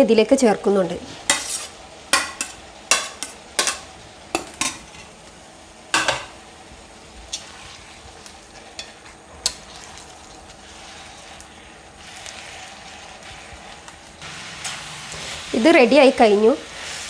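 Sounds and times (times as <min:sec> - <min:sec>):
food sizzling: 0:00.0 - 0:17.0
spoon scraping a pan: 0:01.2 - 0:05.1, 0:07.3 - 0:15.5.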